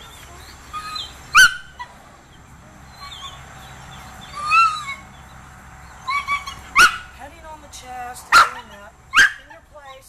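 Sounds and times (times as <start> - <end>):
dog whining: 0.3 - 2.0, 2.9 - 3.5, 4.3 - 5.1, 6.0 - 7.1
dog yelping: 0.7 - 2.0, 2.9 - 3.7, 4.3 - 5.1, 6.0 - 7.2, 8.3 - 10.0.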